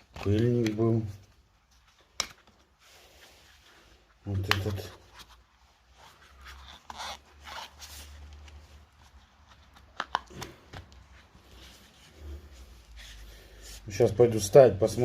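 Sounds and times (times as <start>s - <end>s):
hands rustling and scraping parts: 0.0s - 14.5s.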